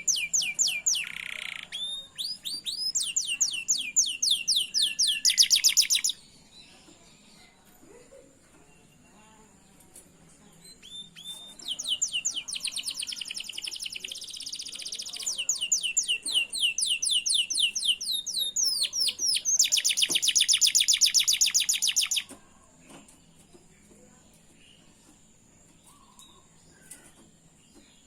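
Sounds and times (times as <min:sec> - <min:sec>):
canary singing rapid trills: 0:00.0 - 0:06.2, 0:10.7 - 0:22.3.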